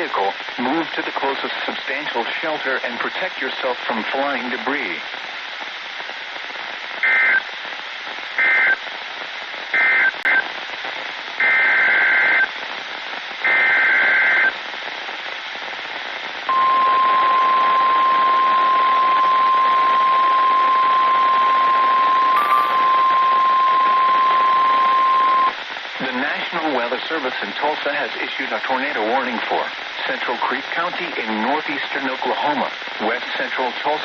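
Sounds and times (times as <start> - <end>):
static hiss: 0.0 - 34.0
steady alarm tone: 16.5 - 25.5
two-tone data warbles: 16.5 - 25.5.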